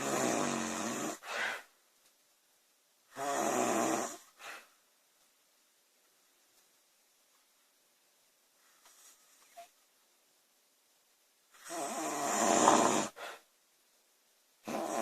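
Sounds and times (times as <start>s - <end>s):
woman snoring: 0.0s - 1.5s, 3.1s - 4.4s, 11.6s - 13.4s, 14.6s - 15.0s
soft breath: 1.2s - 1.8s, 4.2s - 4.8s, 13.1s - 13.5s.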